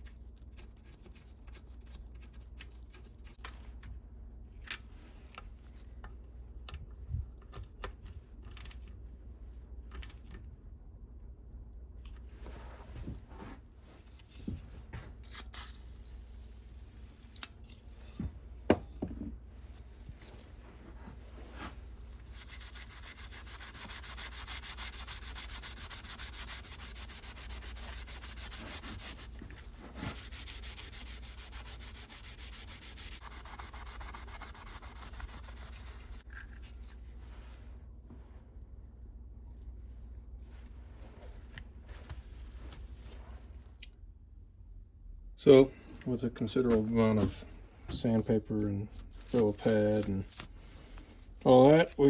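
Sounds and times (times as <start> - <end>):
sandpaper rasping on steel: 22.2 - 36.2.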